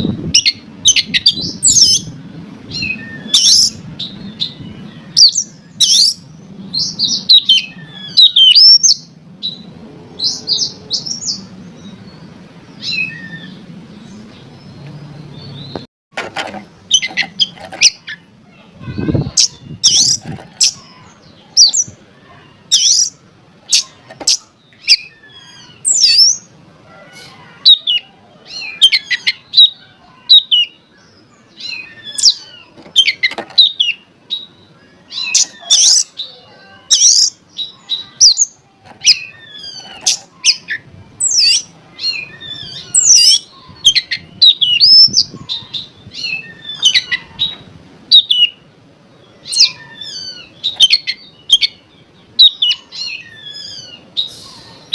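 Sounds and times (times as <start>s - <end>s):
bird singing chirps and whistles: 2.7s - 11.5s, 12.8s - 13.6s, 22.7s - 26.5s, 27.7s - 31.0s, 31.6s - 36.2s, 36.9s - 48.6s, 49.4s - 51.8s, 52.4s - 54.5s.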